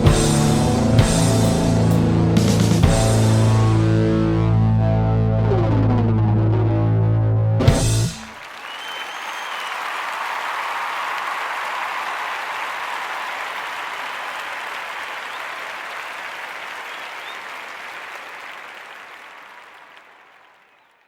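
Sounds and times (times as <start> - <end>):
crowd applause: 7.8 - 21.0.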